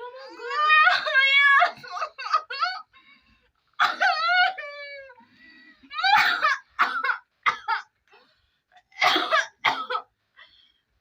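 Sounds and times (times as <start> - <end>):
person coughing: 9.0 - 10.1.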